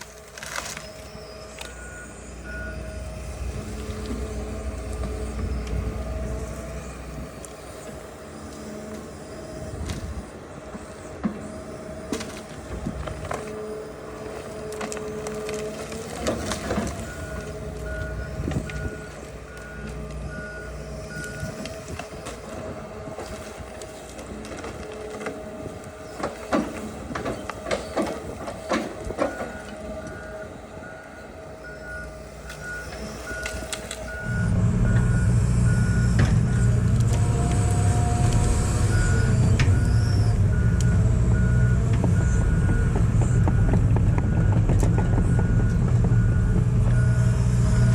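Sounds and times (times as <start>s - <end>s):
excavator engine running: 0.0s - 47.9s
warning alarm beeping: 29.3s - 36.9s.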